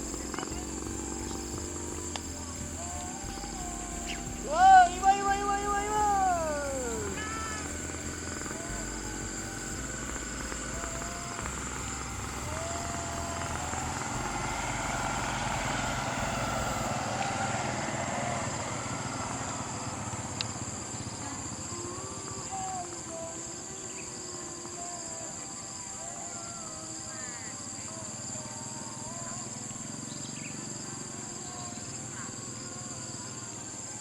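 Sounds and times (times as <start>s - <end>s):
low rumble: 0.0s - 21.5s
insects droning: 0.0s - 34.0s.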